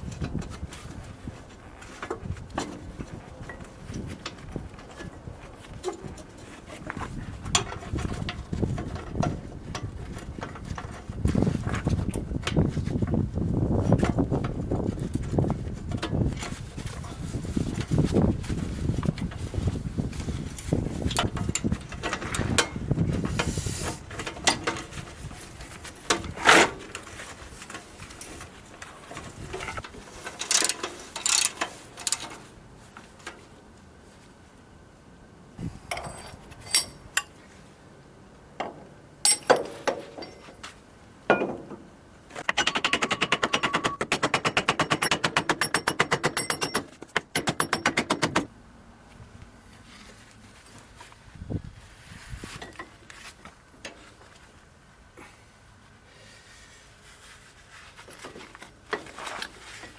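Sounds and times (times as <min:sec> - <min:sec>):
fast metallic clicking: 0:30.4 - 0:32.3
metal tools clinking and knocking: 0:35.9 - 0:37.4, 0:39.2 - 0:40.6, 0:42.5 - 0:48.2.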